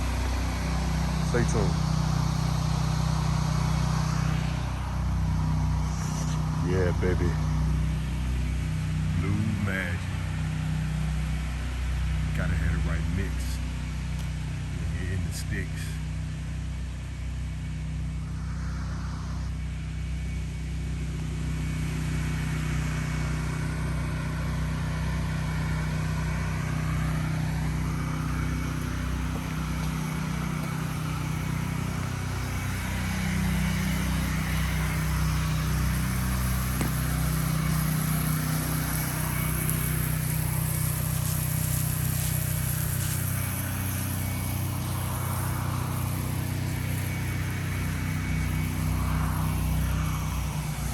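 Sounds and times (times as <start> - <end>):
pressure washer engine running: 0.0 - 50.9
steady hiss: 25.3 - 50.9.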